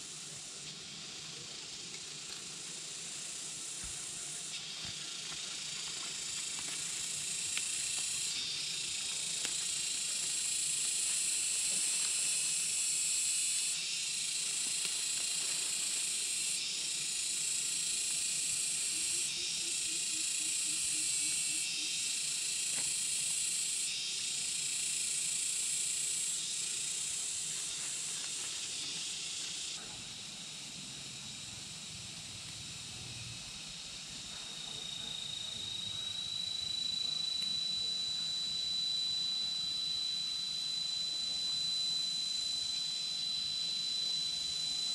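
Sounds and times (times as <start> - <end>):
insects droning: 0.0 - 44.9.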